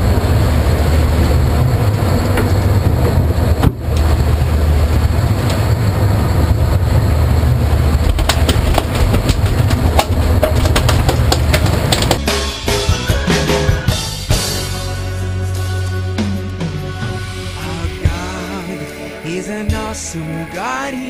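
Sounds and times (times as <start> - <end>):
wind: 0.0 - 12.2
boat engines rumbling: 0.0 - 21.0
sharp clicks and knocks: 8.0 - 12.2.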